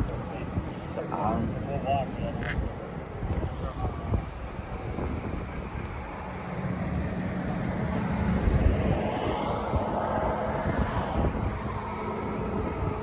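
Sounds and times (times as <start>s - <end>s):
wind on microphone: 0.0s - 13.0s
vehicle passing by: 3.3s - 13.0s.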